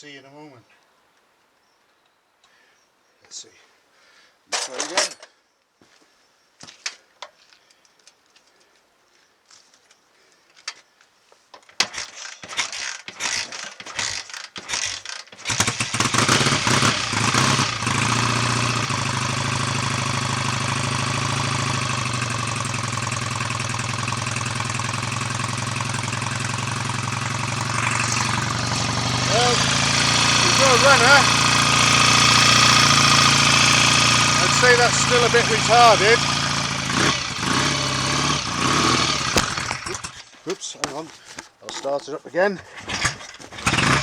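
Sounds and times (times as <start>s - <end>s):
motorcycle engine kickstart clatter: 11.7s - 40.3s, 42.7s - 44.0s
motorcycle engine running: 13.2s - 41.0s, 42.8s - 44.0s.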